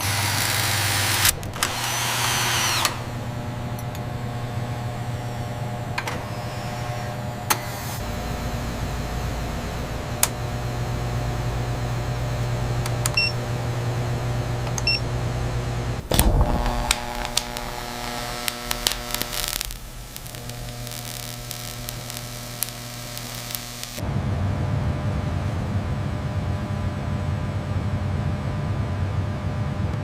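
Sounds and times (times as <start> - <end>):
machine hum: 0.0 - 29.9
clicks: 1.2 - 4.1, 12.8 - 13.4, 14.6 - 15.0, 16.1 - 24.0.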